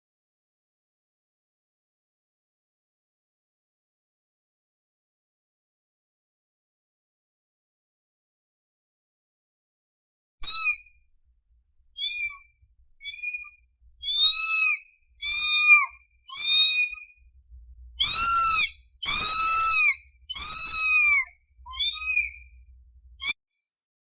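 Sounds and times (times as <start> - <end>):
kitten mewing: 10.4 - 10.8, 12.0 - 12.4, 13.0 - 17.1, 18.0 - 22.4.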